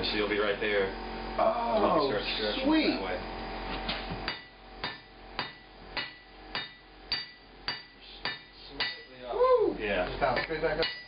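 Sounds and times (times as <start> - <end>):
hammer striking steel on anvil: 4.3 - 9.2, 10.4 - 11.0.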